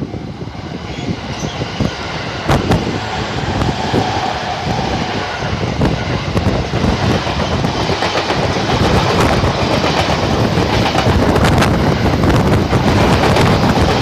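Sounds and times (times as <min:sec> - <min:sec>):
train rumbling past: 0:00.0 - 0:14.0.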